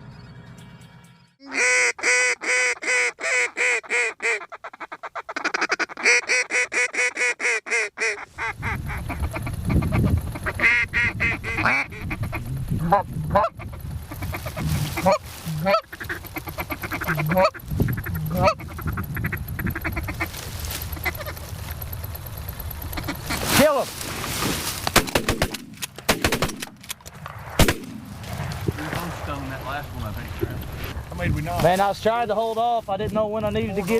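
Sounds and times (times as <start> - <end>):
goose honking: 1.4 - 21.7, 22.9 - 23.6
low rumble: 8.6 - 31.6.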